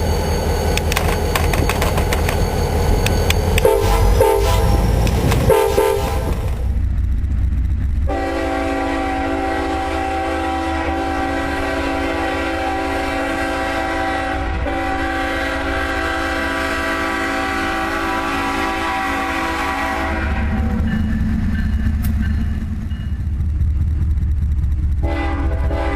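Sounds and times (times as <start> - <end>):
low rumble: 1.2 - 9.4, 20.2 - 25.9
locomotive air horn chord: 3.6 - 6.5, 8.1 - 20.8, 25.0 - 25.9.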